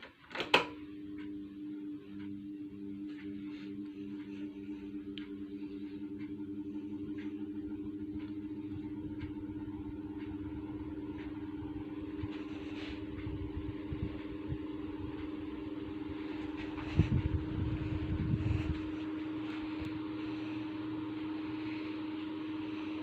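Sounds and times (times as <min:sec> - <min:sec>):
electric fan running: 0:00.0 - 0:23.0
wind buffeting microphone: 0:16.8 - 0:18.9.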